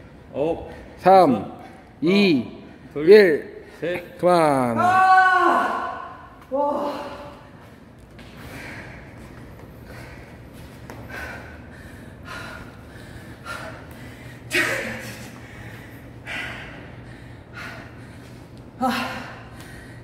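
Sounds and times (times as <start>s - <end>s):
man panting heavily: 8.3s - 20.0s.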